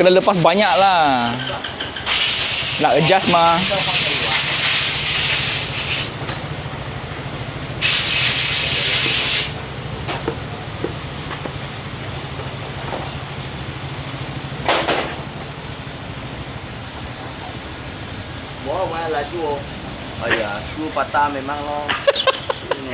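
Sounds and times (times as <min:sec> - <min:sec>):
hissing spray: 0:00.0 - 0:01.1, 0:02.0 - 0:06.2, 0:07.8 - 0:09.6.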